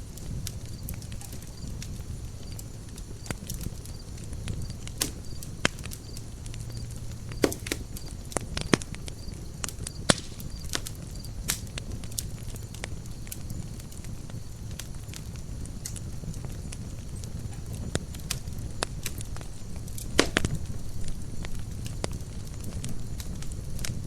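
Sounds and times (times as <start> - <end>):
low rumble of fire: 0.0 - 24.0
wood crackling and popping: 0.0 - 24.0.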